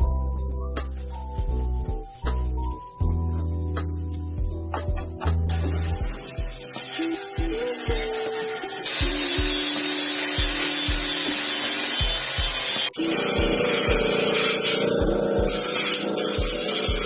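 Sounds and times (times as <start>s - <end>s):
background music with a beat: 0.0s - 17.0s
power tool scouring a surface: 5.5s - 17.0s.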